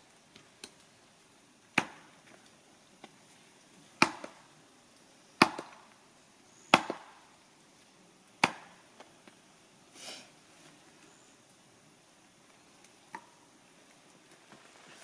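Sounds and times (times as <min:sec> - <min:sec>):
axe chopping firewood: 0:01.7 - 0:02.1, 0:04.0 - 0:04.4, 0:05.4 - 0:05.8, 0:06.7 - 0:07.2, 0:08.4 - 0:08.8.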